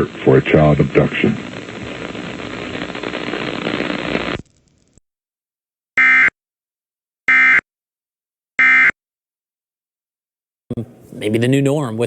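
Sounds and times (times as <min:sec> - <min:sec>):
noisy hiss: 0:00.0 - 0:04.5.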